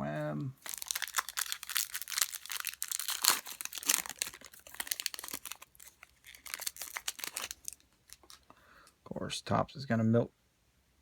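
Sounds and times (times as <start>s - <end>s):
cards rustling and snapping: 0.6s - 8.6s.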